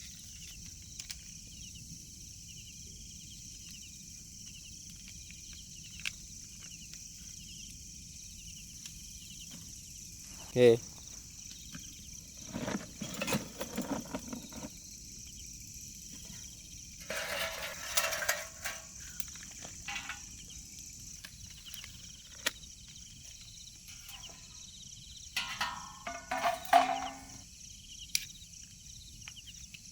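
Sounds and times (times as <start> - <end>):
high-pitched insect chorus: 0.0 - 29.9
handling rustling and clicking: 17.0 - 20.4, 25.4 - 27.4.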